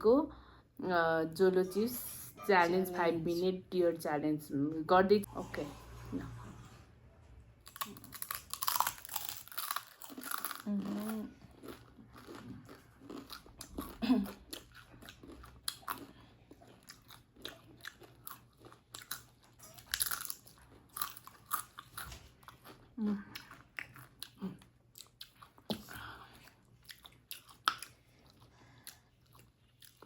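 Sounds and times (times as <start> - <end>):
crunching and chewing chips: 7.6 - 30.0.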